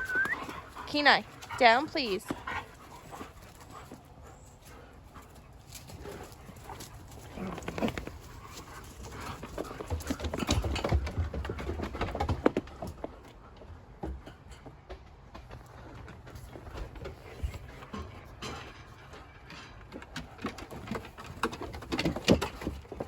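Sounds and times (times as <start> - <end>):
dogs scrabbling: 0.0 - 14.5, 19.8 - 23.0.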